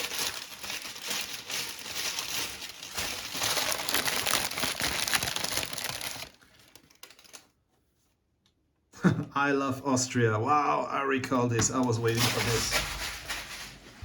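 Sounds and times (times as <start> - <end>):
packaging crinkling: 0.0 - 7.5.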